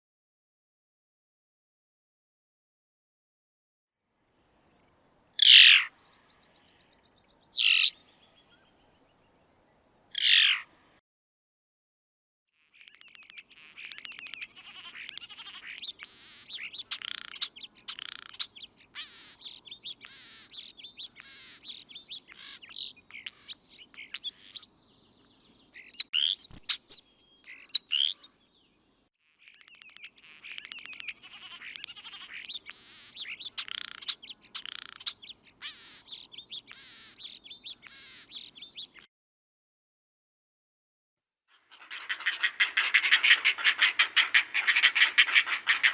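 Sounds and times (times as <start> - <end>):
songbird singing: 4.4 - 10.8, 12.6 - 39.1, 41.6 - 45.9
loud bird calls: 5.4 - 8.8, 10.1 - 10.7, 12.6 - 28.8, 29.4 - 39.1, 41.5 - 45.9.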